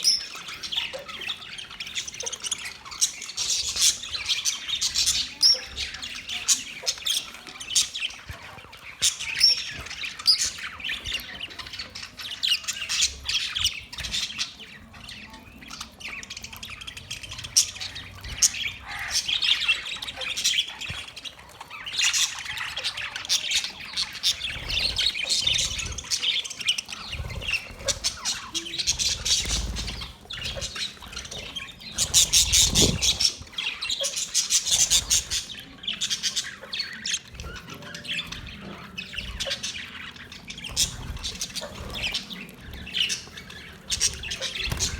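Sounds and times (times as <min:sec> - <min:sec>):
parrots squawking and chirping: 0:00.0 - 0:44.9.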